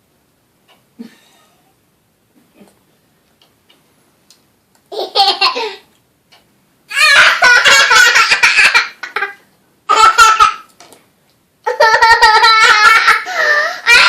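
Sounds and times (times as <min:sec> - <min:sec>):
small child laughing: 0:04.9 - 0:05.9, 0:06.9 - 0:10.7, 0:11.6 - 0:14.0.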